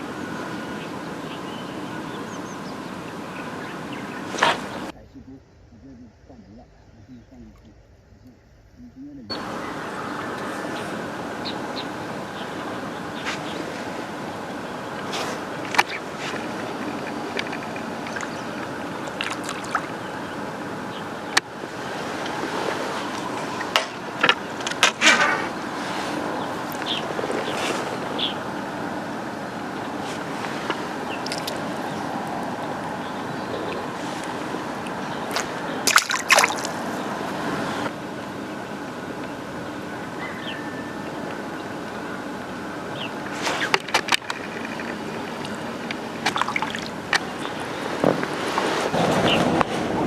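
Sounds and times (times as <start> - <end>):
steady outdoor noise: 0.0 - 50.0
water trickling: 14.2 - 20.2, 30.8 - 33.0, 34.6 - 37.3, 43.8 - 47.8
clicks and rattles: 16.8 - 19.8.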